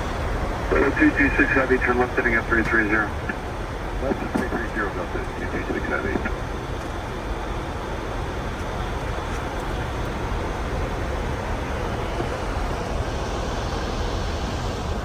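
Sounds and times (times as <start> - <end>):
cockpit airflow rush and hum: 0.0 - 15.0.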